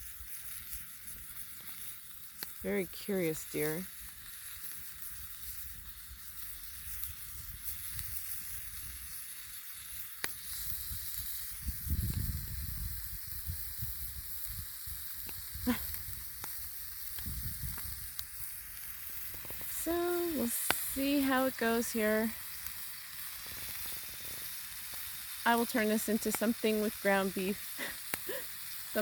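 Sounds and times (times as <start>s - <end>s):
meat sizzling in a pan: 0.0s - 29.0s
small pops: 10.0s - 11.4s, 15.2s - 21.7s, 28.0s - 28.4s.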